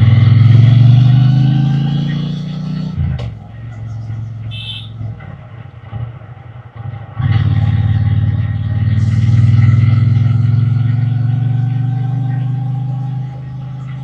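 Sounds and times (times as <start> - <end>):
motorcycle engine and exhaust: 0.0 - 14.0.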